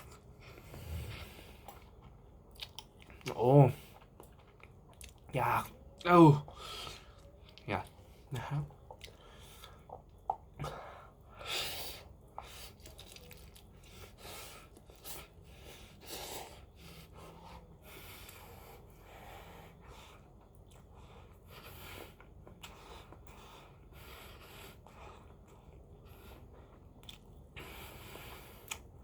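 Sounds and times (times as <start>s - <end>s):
chewing: 0.0s - 5.4s, 6.4s - 10.7s, 12.1s - 18.5s, 19.8s - 29.0s.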